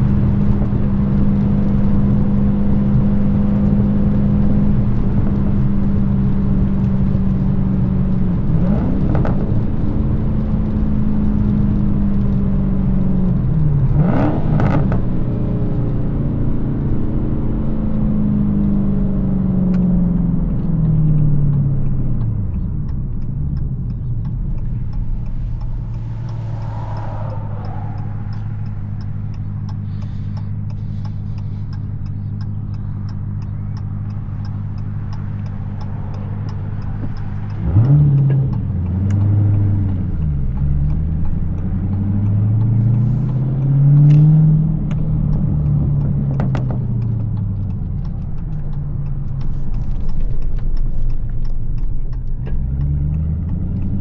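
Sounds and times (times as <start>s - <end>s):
car engine revving: 0.0s - 54.0s
exhaust cracks: 0.0s - 54.0s.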